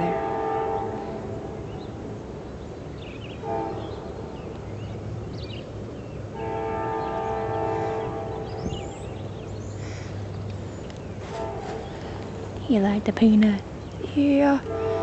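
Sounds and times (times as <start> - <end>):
train air horn blasts: 0.0 - 1.7, 3.4 - 4.1, 6.3 - 9.0, 11.2 - 12.0, 14.6 - 15.0.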